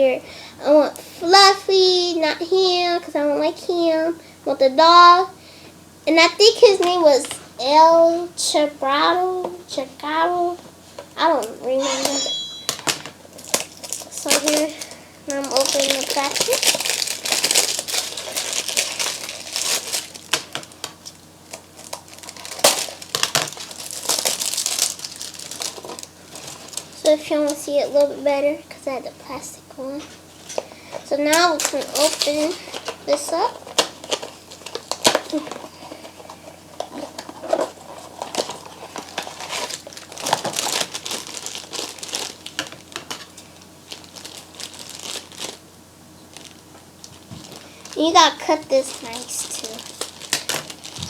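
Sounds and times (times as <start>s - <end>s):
plastic packaging crinkling: 11.0s - 27.8s, 30.2s - 51.0s.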